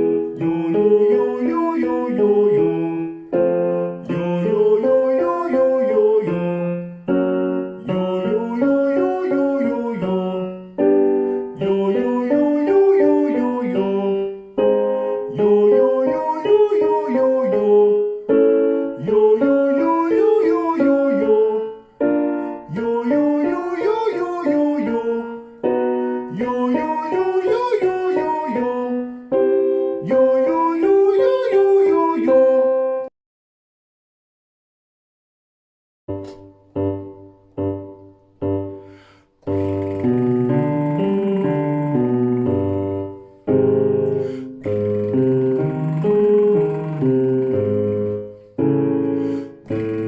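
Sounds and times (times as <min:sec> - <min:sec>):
person singing vocal exercise: 0:00.0 - 0:33.1, 0:38.6 - 0:50.0
piano chords: 0:00.0 - 0:33.1, 0:36.1 - 0:50.0
piano chords and note runs: 0:36.1 - 0:50.0.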